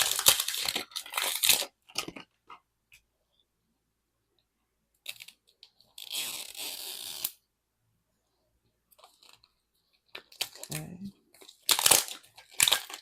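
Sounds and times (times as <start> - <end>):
plastic wrapping tearing: 0.0 - 2.2, 5.0 - 7.4, 10.2 - 13.0.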